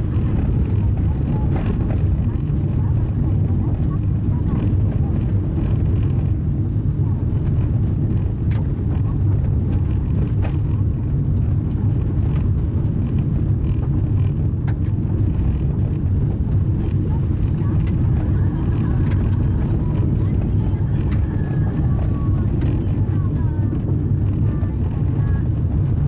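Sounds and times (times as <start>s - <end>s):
tyres rumbling on gravel: 0.0s - 26.0s
stones clicking against car: 7.4s - 21.7s.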